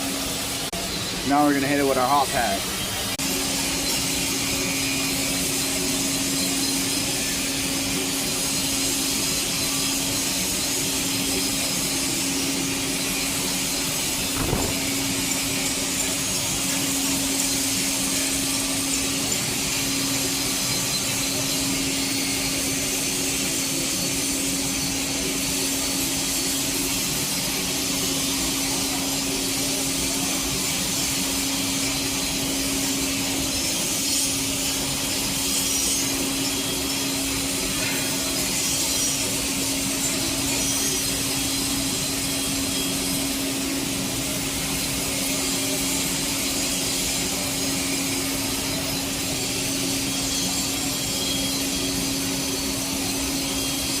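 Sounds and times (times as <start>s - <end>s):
welding arc hissing: 12.7s - 17.2s
steady low hum: 12.8s - 17.7s.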